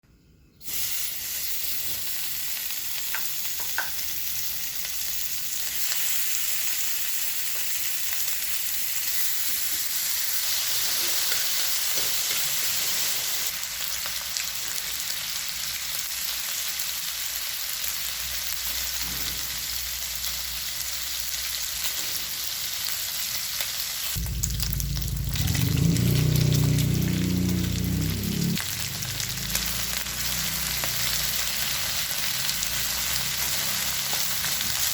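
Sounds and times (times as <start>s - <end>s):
food sizzling in oil: 0.6s - 34.9s
low rumble: 24.2s - 29.6s.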